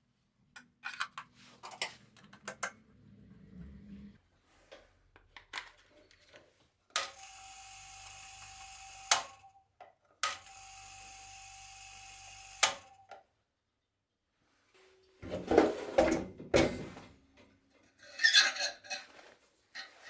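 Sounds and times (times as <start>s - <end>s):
small clicks: 9.1s - 9.4s, 12.6s - 13.2s.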